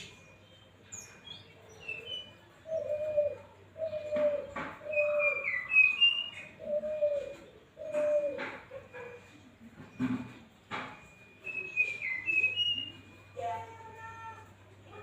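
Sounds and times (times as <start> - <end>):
low coo-like notes: 1.6 - 15.0.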